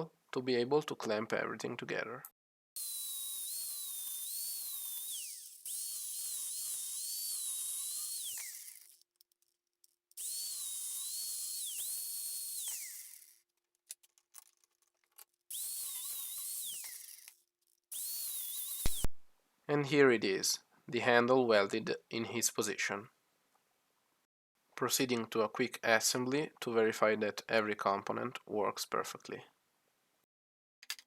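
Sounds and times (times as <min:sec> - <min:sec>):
rotary cutting tool whining: 0:02.8 - 0:09.1, 0:10.1 - 0:13.4, 0:15.5 - 0:19.2.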